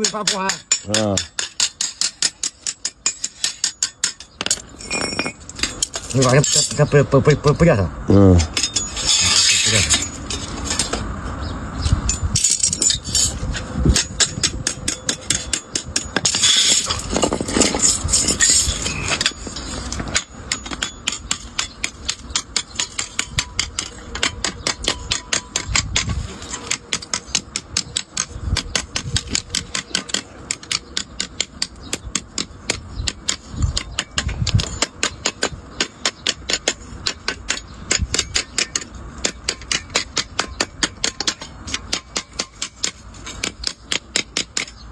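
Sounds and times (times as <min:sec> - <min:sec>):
hammer striking iron on anvil: 0:14.0 - 0:17.0, 0:20.0 - 0:44.8.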